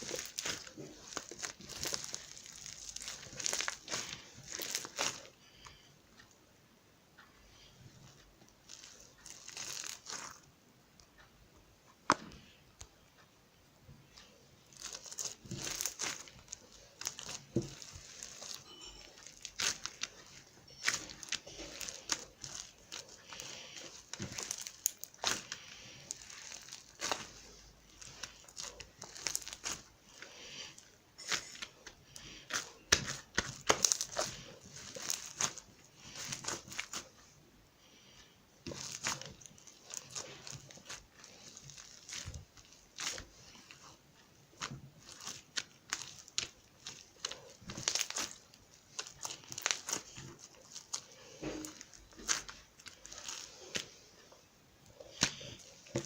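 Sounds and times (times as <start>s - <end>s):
slime squished by hand: 0.0s - 5.3s, 14.7s - 37.2s, 38.6s - 44.0s, 44.6s - 54.1s.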